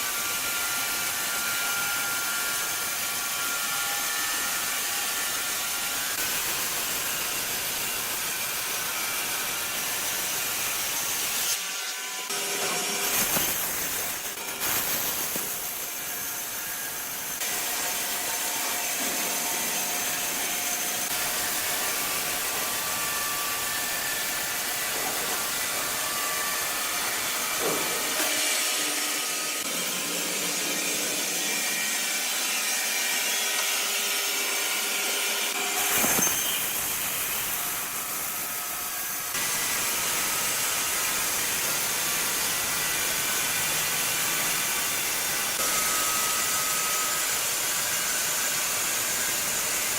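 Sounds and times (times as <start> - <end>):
saw rasping through wood: 0.0 - 49.9
faint saw whine: 13.1 - 49.9.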